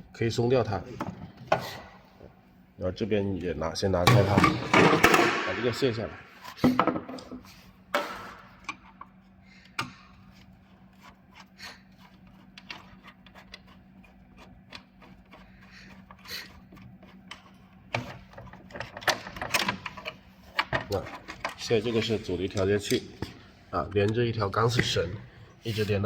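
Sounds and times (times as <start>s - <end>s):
faint steady hum: 0.0s - 26.0s
clicks taps and rubbing of parts: 6.5s - 25.0s.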